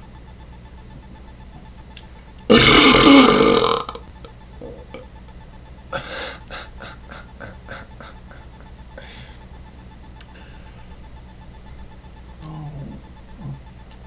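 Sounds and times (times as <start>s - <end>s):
man burping loudly: 2.5s - 5.0s.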